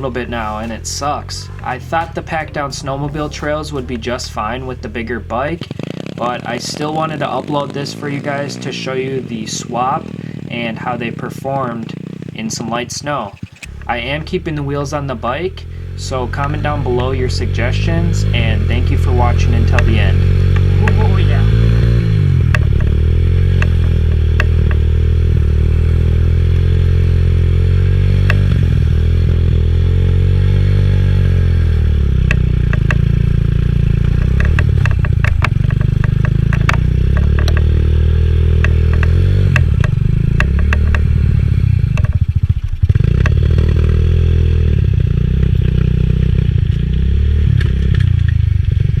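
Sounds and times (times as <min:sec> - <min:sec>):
pit bike engine revving: 0:00.0 - 0:49.0
clicks and scraping: 0:13.3 - 0:14.4, 0:34.0 - 0:37.8.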